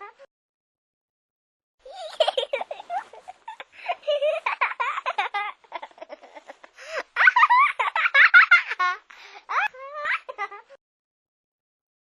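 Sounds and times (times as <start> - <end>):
baby giggling: 1.8 - 10.8.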